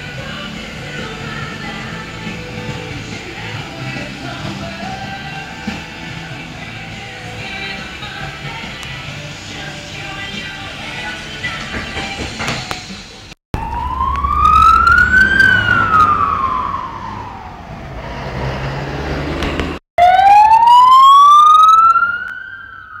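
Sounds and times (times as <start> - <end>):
ambulance siren wailing: 13.6 - 18.1, 20.0 - 23.0
low vehicle rumble: 13.6 - 19.8.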